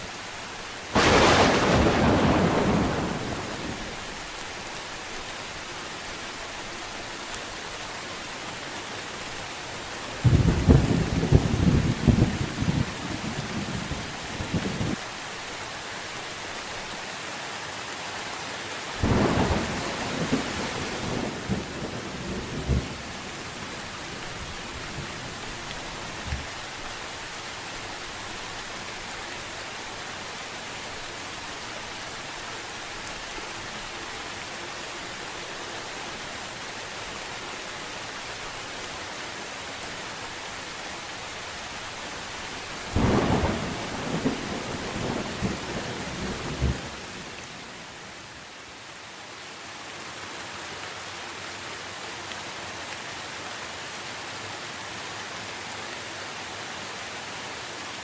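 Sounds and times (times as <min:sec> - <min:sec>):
steady rain falling: 0:00.0 - 0:58.0
thunder clap rumbling: 0:01.0 - 0:04.0, 0:10.2 - 0:15.0, 0:19.0 - 0:23.1, 0:43.0 - 0:47.0.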